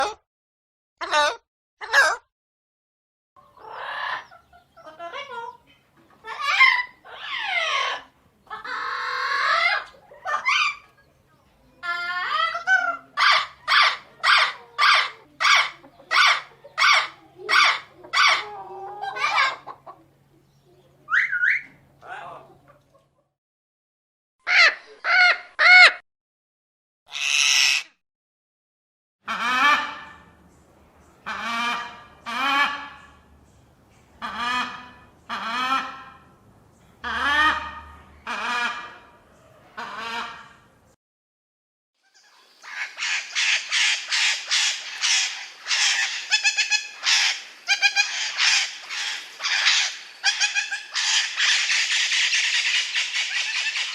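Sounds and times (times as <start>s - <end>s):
parrot calling: 6.3s - 10.9s, 11.8s - 19.7s, 21.1s - 22.4s, 24.4s - 26.0s, 27.1s - 28.0s, 42.0s - 53.9s.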